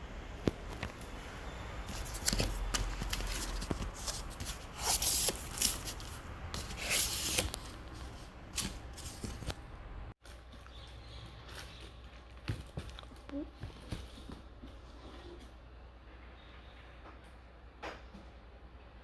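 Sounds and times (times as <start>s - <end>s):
packaging rustling: 1.9s - 9.6s.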